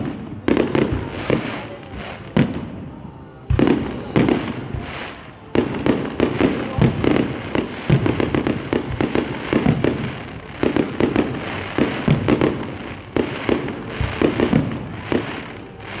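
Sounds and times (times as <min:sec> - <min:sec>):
fireworks bangs and cracks: 0:00.0 - 0:16.0.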